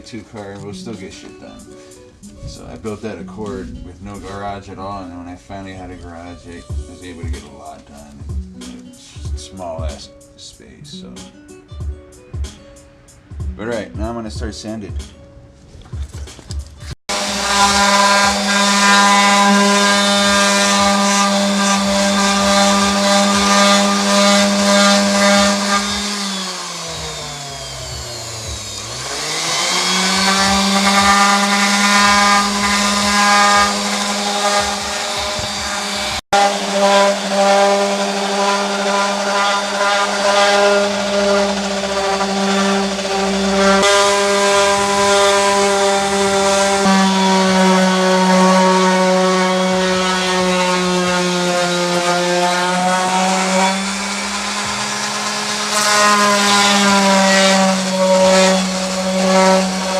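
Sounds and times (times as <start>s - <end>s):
orbital sander on plastic: 16.8s - 59.9s.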